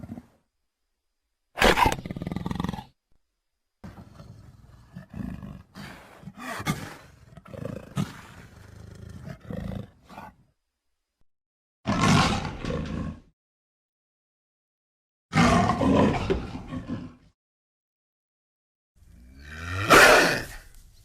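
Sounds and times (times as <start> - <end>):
creature roar: 11.9 - 13.3, 15.3 - 17.2, 19.4 - 20.6.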